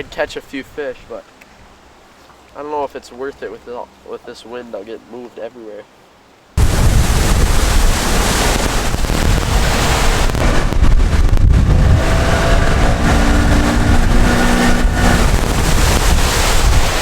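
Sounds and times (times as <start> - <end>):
wind buffeting microphone: 6.6 - 17.0.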